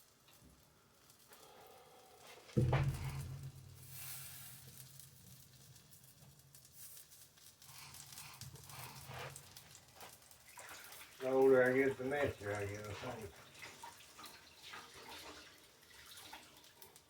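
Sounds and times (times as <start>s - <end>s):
pancake batter sizzling: 0.0s - 17.0s
low steady hum: 2.6s - 5.0s
light clicks and scrapes: 6.0s - 11.1s.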